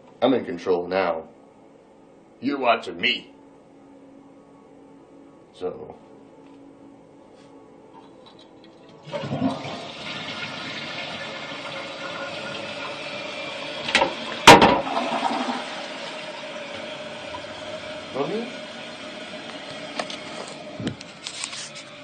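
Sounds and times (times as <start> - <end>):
toilet flushing: 8.8 - 21.2.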